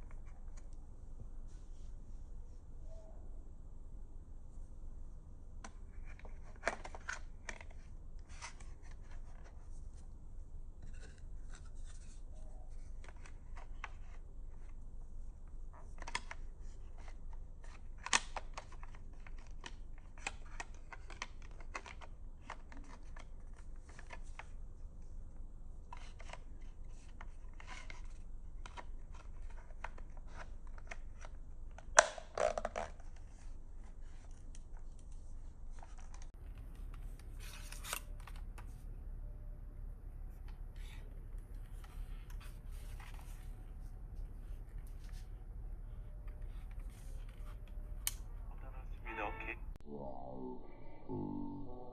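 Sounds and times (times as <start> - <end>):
low steady hum: 0.0 - 32.0, 32.7 - 51.9.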